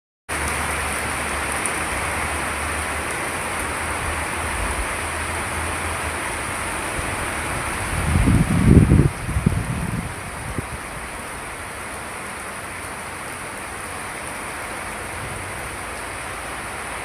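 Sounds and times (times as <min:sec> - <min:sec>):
heavy rain falling: 0:00.3 - 0:17.0.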